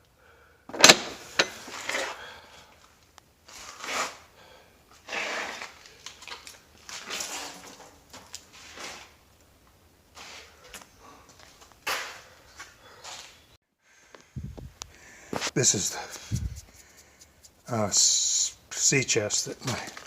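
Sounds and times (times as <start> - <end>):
scraping on wood: 5.0 - 5.8, 15.4 - 17.7.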